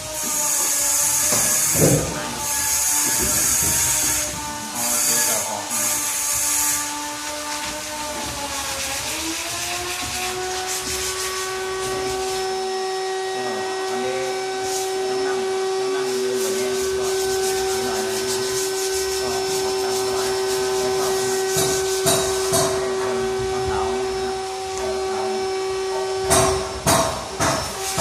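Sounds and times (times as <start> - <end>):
power tool motor whining: 0.0 - 28.0
sharp knocks: 1.2 - 4.5, 26.2 - 28.0.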